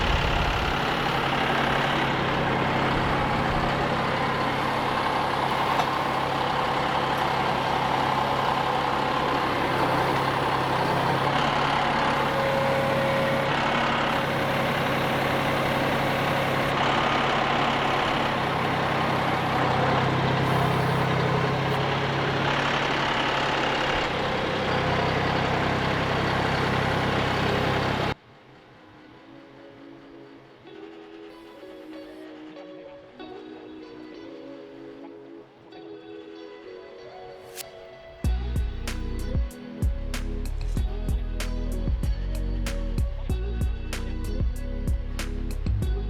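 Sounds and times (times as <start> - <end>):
tractor engine running: 0.0 - 28.2, 38.2 - 46.0.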